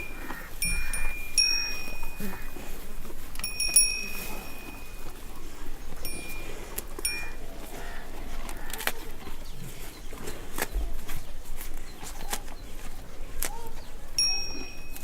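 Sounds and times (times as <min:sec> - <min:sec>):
small bell ringing: 0:00.0 - 0:02.2, 0:03.4 - 0:05.1, 0:06.0 - 0:07.4, 0:14.2 - 0:15.0
birds calling: 0:00.0 - 0:15.0.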